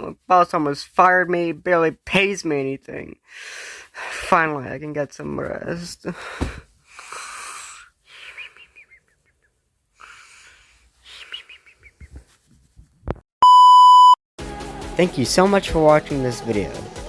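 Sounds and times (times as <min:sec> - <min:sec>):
person snoring: 0:06.9 - 0:08.3.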